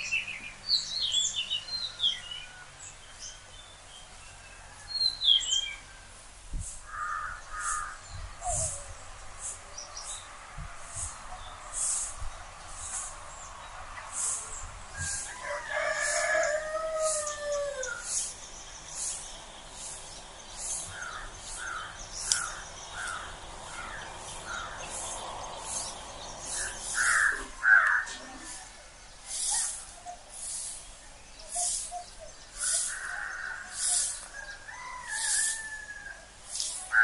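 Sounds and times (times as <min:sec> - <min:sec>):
birds calling: 0:06.6 - 0:37.0
mid-pitched bird calls: 0:06.8 - 0:10.3, 0:10.9 - 0:37.0
high thin bird chirp: 0:29.2 - 0:34.4.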